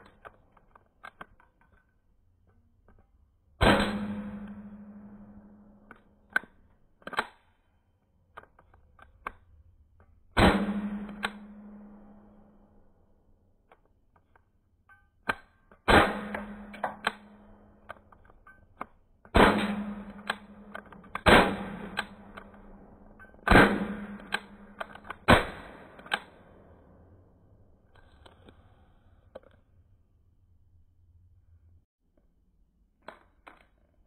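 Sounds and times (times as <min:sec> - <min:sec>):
small clicks: 0:00.0 - 0:03.2, 0:05.8 - 0:10.1
pistol shots: 0:03.6 - 0:05.2, 0:15.9 - 0:17.5, 0:19.3 - 0:22.8, 0:23.4 - 0:26.4.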